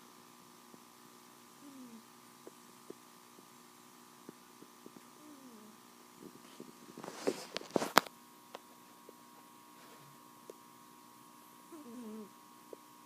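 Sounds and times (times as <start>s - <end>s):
steady electrical hum: 0.0s - 13.0s
cat snoring softly: 1.6s - 2.1s, 5.2s - 6.7s, 11.7s - 12.4s.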